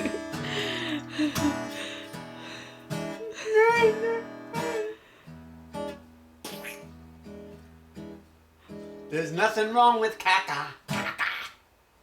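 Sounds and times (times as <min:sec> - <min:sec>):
acoustic guitar strumming: 0:00.0 - 0:10.2.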